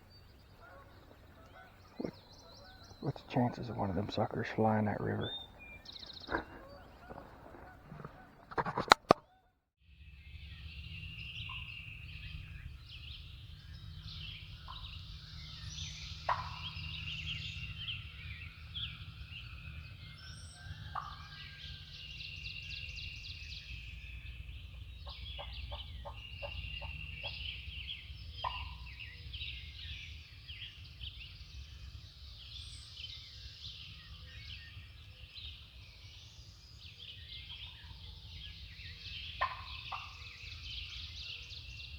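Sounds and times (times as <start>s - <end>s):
songbirds chorus: 0.0s - 9.2s, 10.1s - 41.9s
wild turkey gobbling: 0.6s - 9.2s, 16.3s - 16.7s, 28.4s - 28.8s, 39.4s - 40.3s
sharp clicks: 8.5s - 9.2s.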